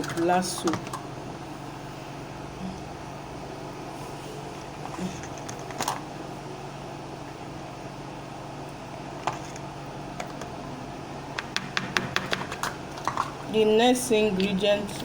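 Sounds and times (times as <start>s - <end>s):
steady low hum: 0.0s - 15.0s
containers clicking and knocking: 11.3s - 13.5s.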